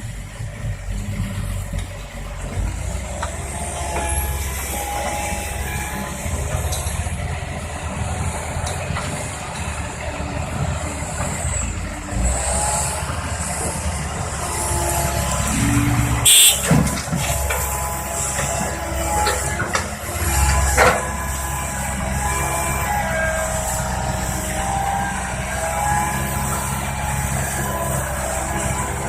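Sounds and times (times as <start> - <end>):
excavator diesel engine under load: 0.0 - 29.0
hydraulic whining tones: 11.1 - 29.0.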